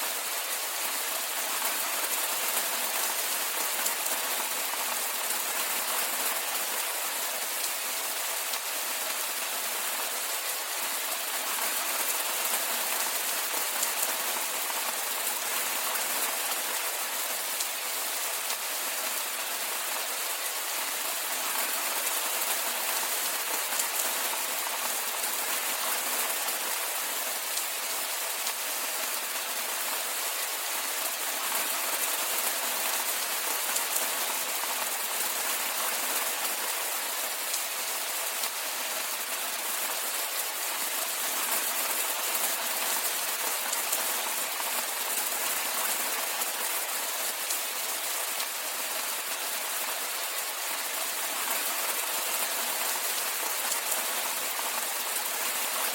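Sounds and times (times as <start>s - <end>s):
rain hiss: 0.0s - 55.9s.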